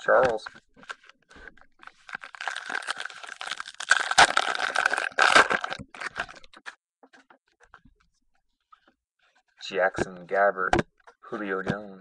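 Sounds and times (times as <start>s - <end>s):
card pack wrapper crinkling: 1.8s - 6.6s.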